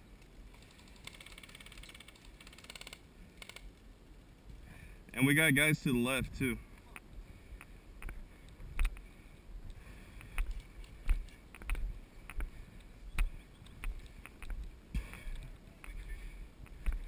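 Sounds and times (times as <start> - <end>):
sharp clicks with thumps: 10.2 - 12.5, 13.2 - 16.0.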